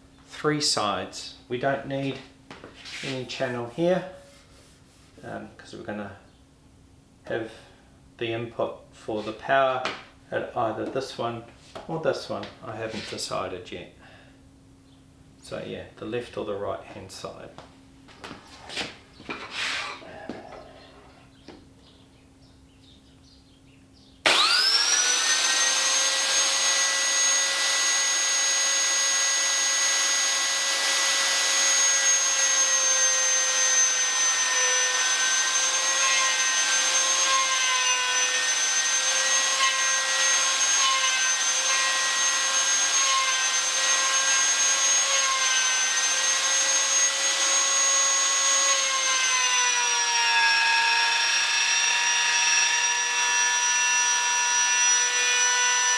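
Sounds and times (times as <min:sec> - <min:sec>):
wood router whining: 0:24.2 - 0:55.9.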